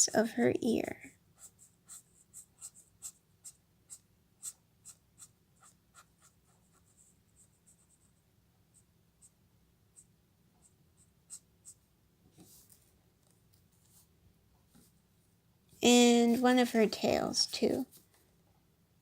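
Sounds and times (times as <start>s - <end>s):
marker strokes on paper: 1.3s - 11.8s, 16.1s - 18.1s.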